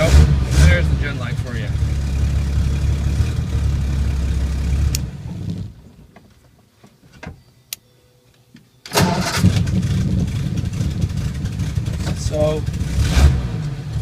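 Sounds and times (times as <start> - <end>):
car engine idling: 1.0 - 6.5, 9.1 - 13.1.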